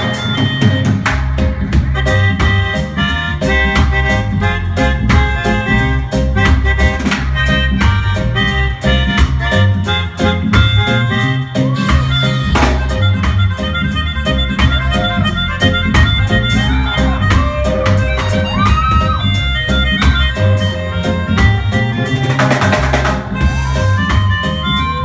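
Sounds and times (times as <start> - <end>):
lead instrument bending notes: 0.0 - 25.0
reggae band playing: 0.0 - 25.0.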